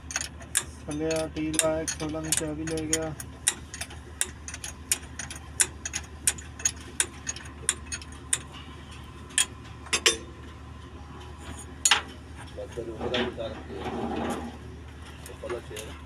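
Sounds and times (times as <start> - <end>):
steady low hum: 0.0 - 16.0
metallic clicks of tools: 0.1 - 8.5.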